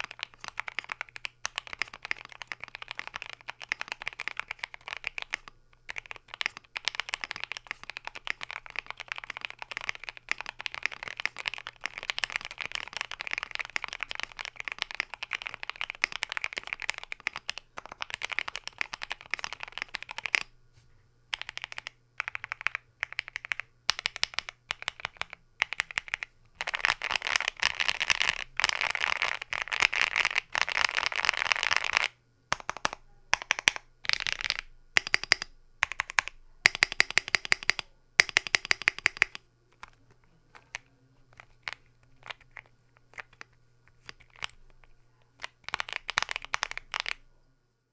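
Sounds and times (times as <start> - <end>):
mechanical keyboard typing: 0.0 - 20.5, 21.3 - 47.2.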